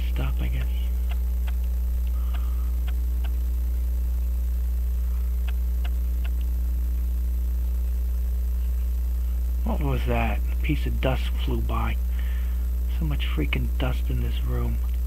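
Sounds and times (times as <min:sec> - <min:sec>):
electrical mains hum: 0:00.0 - 0:15.0
faint light ticks: 0:02.3 - 0:03.4.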